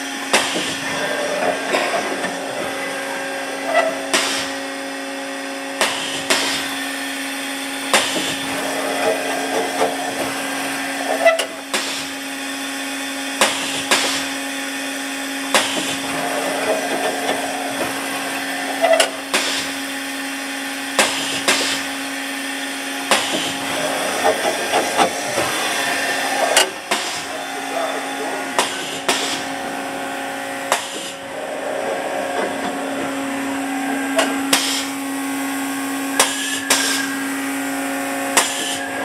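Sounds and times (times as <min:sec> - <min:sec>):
lathe mechanical hum: 0:00.0 - 0:39.0.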